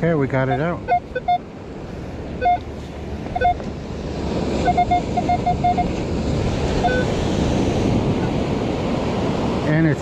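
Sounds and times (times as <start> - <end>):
metal detector beeping: 0.4 - 1.4, 2.4 - 2.7, 3.3 - 3.7, 4.6 - 5.9, 6.8 - 7.1.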